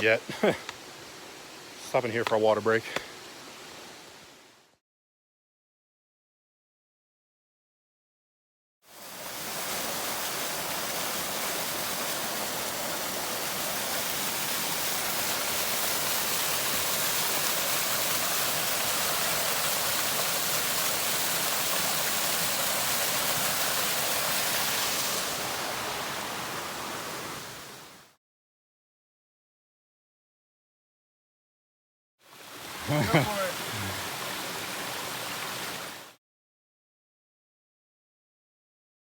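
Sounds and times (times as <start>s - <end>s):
creek rushing over rocks: 0.0s - 4.4s, 8.9s - 28.0s, 32.3s - 36.2s.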